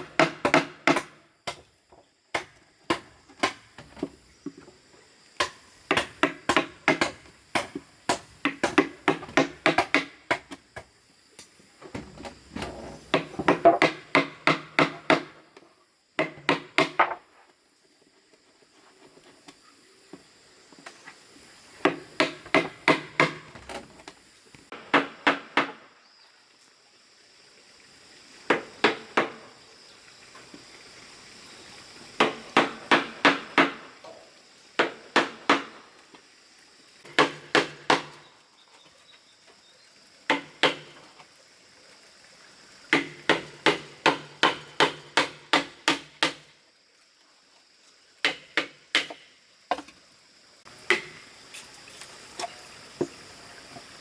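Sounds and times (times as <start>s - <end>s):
hammer driving nails: 5.4s - 10.6s.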